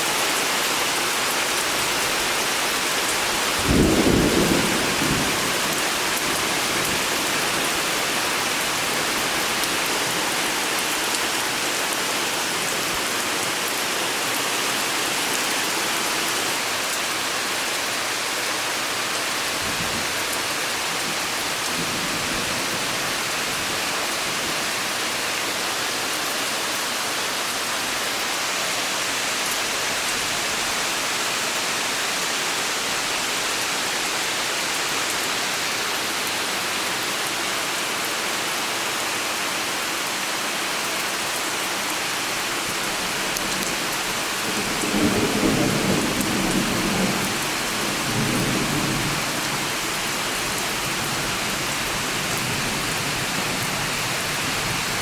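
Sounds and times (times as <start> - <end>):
steady rain hiss and patter: 0.0 - 55.0
low rumble of thunder: 3.6 - 5.8.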